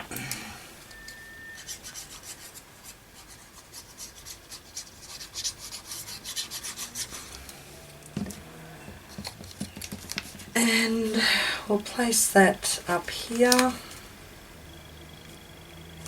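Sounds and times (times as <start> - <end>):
light rubbing strokes on paper: 1.6 - 7.7.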